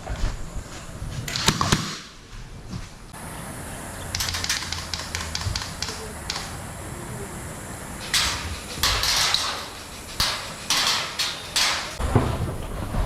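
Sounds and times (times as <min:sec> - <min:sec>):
steady low hum: 0:00.0 - 0:13.0
sharp clicks and taps: 0:04.1 - 0:06.6.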